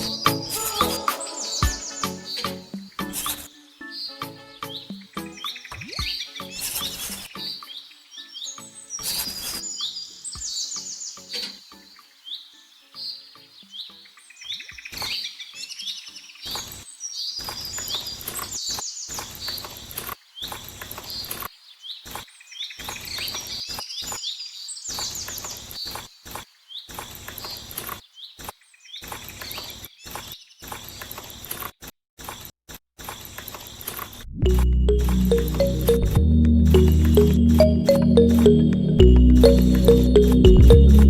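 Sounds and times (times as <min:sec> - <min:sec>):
small birds chirping: 0:00.0 - 0:31.5.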